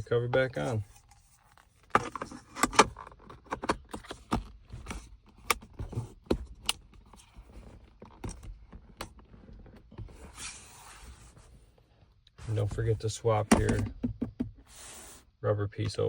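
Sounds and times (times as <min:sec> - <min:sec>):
plastic trim clicking and knocking: 0:13.5 - 0:14.6.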